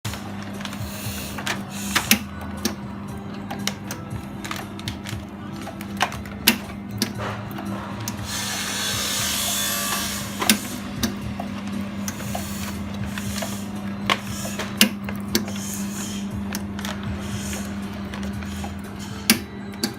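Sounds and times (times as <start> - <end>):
band sealer motor hum: 0.0 - 19.9.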